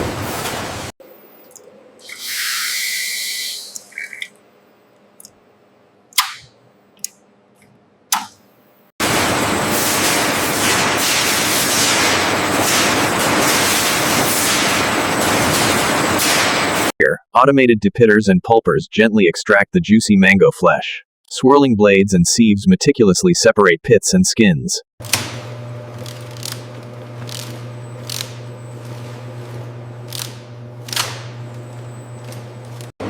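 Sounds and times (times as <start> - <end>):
water spraying hiss: 2.0 - 4.3.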